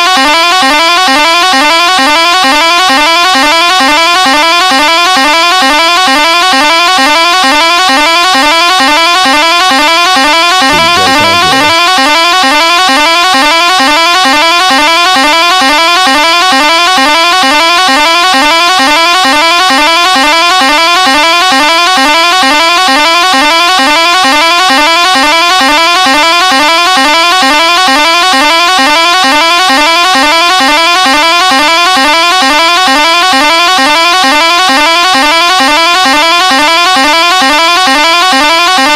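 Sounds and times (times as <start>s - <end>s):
deeper horn note: 10.7s - 12.4s.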